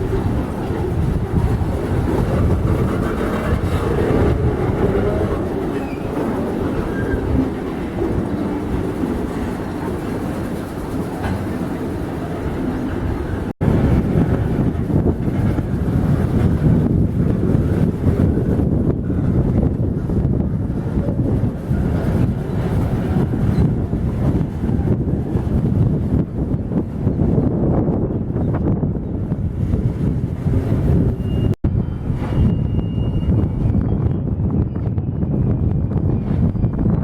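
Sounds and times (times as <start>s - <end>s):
wagons clattering: 0.0s - 13.5s
freight train rumbling: 0.0s - 37.0s.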